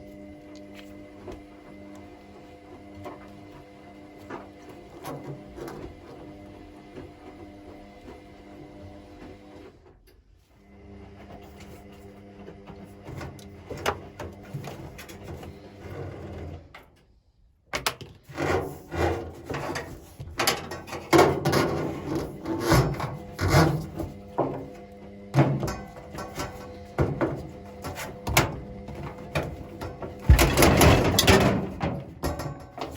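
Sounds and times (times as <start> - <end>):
knocking and clatter of hard parts: 19.2 - 32.9.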